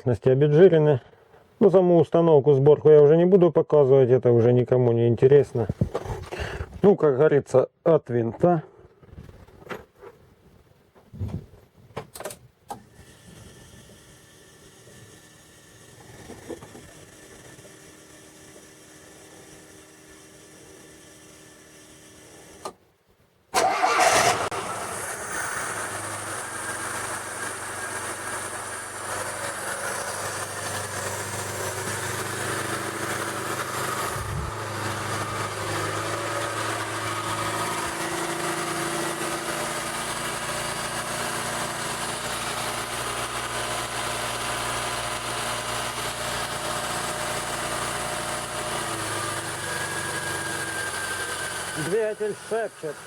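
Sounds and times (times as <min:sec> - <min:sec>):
car engine starting and idling: 0:23.6 - 0:53.0.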